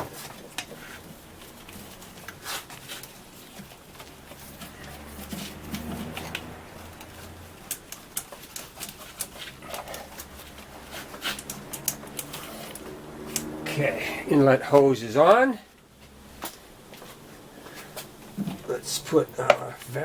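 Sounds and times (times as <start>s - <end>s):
clicks of hose fittings: 4.6s - 13.6s.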